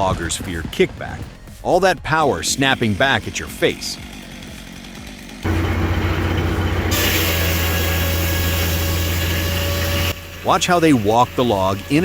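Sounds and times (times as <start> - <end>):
sawmill saw humming: 2.3 - 12.0
blade cutting into log: 3.9 - 12.0.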